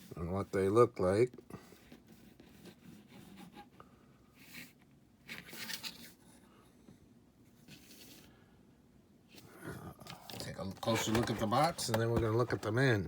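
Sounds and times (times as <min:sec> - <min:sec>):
packaging rustling: 0:10.1 - 0:12.9.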